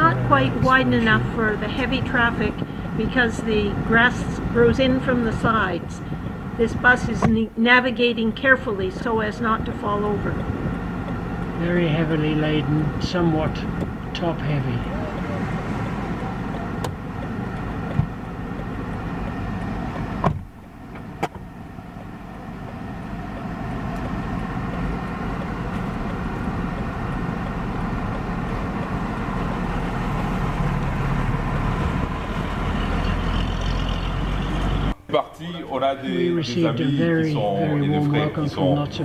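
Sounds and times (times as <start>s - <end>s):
vehicle engine running: 0.0s - 35.0s.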